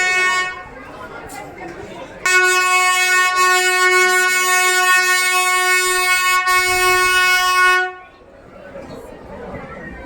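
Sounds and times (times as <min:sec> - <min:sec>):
train horn long blast: 0:00.0 - 0:00.7, 0:02.2 - 0:08.0.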